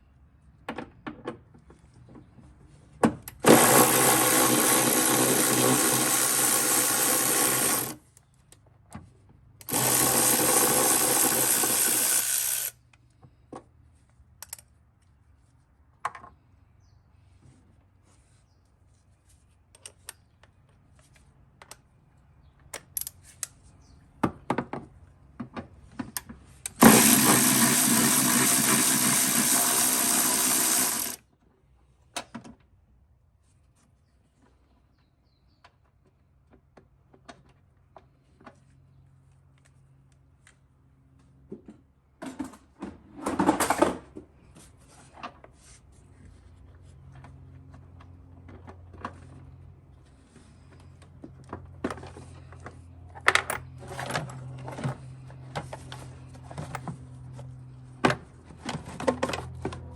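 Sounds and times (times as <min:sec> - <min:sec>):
cordless power tool spinning: 0:03.4 - 0:08.0, 0:09.6 - 0:12.8, 0:26.7 - 0:31.2
clicks and knocks of tools: 0:14.4 - 0:15.2, 0:19.7 - 0:21.9.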